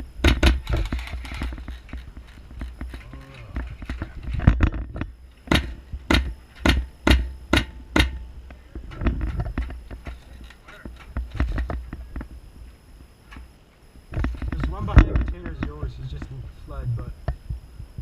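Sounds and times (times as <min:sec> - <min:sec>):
airsoft gun shots: 0:00.2 - 0:01.0, 0:05.5 - 0:08.3.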